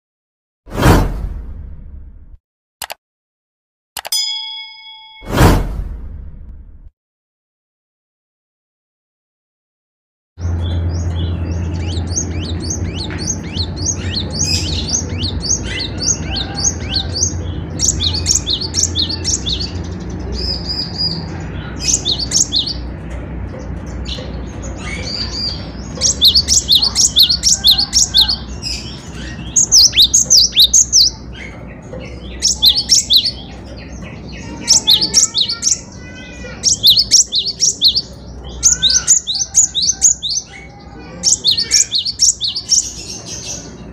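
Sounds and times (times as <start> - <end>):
bird singing rapid high notes: 10.4 - 22.9, 23.9 - 43.9.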